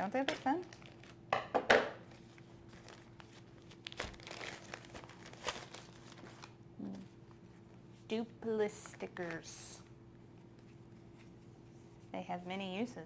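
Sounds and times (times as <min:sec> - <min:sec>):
packaging crinkling: 0:00.2 - 0:01.3, 0:02.1 - 0:06.6.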